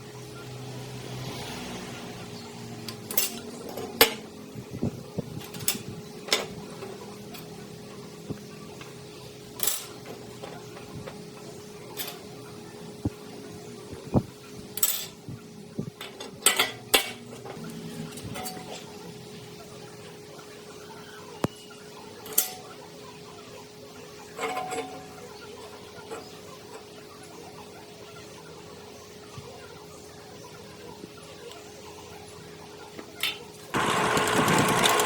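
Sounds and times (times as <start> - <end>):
metal objects clinking: 2.9 - 4.2, 9.6 - 10.6, 14.8 - 15.2.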